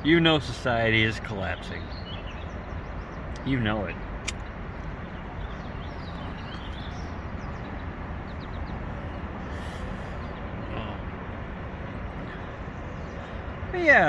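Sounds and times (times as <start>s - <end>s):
low outdoor rumble: 0.0s - 14.0s
faint bird chirps: 1.0s - 11.1s.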